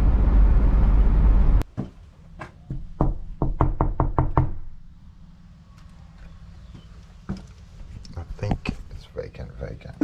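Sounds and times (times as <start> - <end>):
vehicle rumble: 0.0 - 3.0
knocking on door: 2.7 - 4.6.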